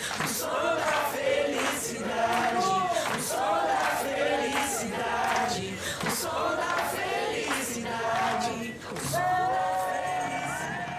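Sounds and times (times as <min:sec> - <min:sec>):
group of voices singing: 0:00.0 - 0:10.9
pop music with percussive hits: 0:05.1 - 0:10.9.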